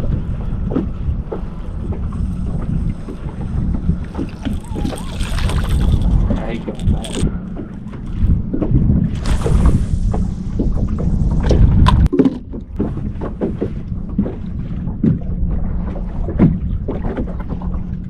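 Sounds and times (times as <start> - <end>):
steady low hum: 0.0 - 18.0
wind rumbling on microphone: 0.0 - 18.0.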